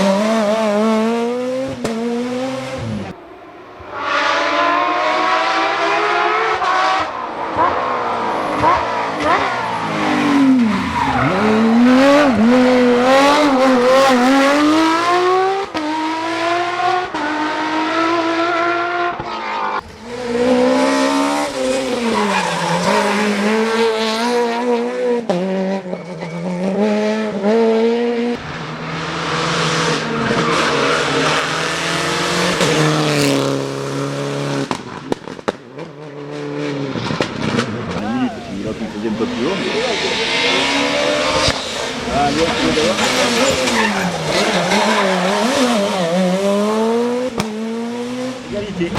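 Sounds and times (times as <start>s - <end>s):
rally car engines revving: 0.0s - 48.9s
tyre squeal: 21.5s - 23.4s, 39.7s - 45.9s.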